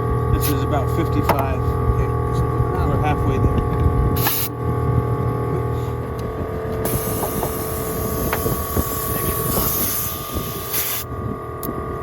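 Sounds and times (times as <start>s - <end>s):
air compressor running: 0.0s - 12.0s
air hiss: 6.9s - 11.1s.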